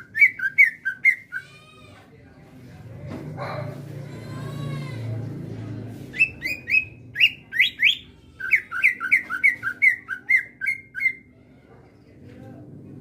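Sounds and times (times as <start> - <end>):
bird singing whistled notes: 6.2 - 11.2.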